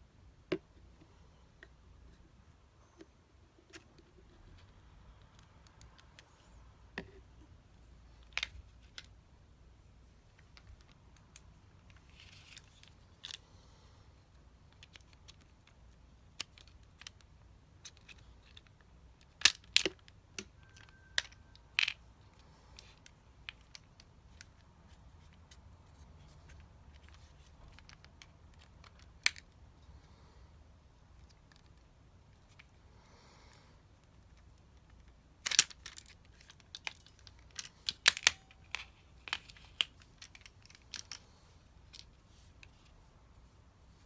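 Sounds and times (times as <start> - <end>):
small parts and tools clicking: 14.6 - 29.6, 31.1 - 32.8, 33.6 - 42.9.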